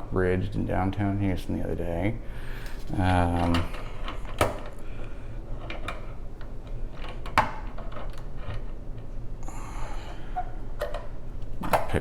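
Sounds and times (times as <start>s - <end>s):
padlock clicking and knocking: 3.1s - 4.9s, 5.6s - 9.2s, 10.8s - 12.0s.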